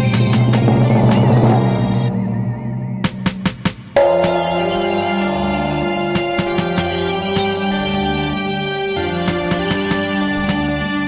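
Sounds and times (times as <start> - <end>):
synthesizer music with beat: 3.3 - 11.0.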